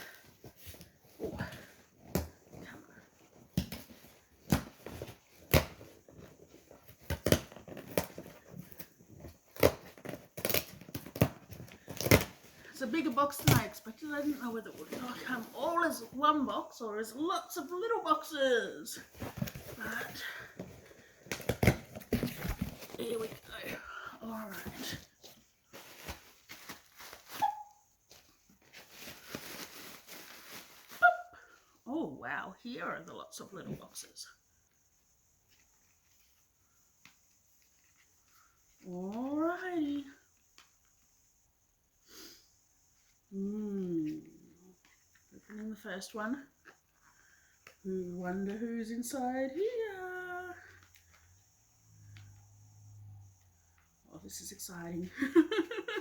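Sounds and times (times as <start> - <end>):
cardboard and packing rustling: 0.0 - 17.2, 18.9 - 31.6.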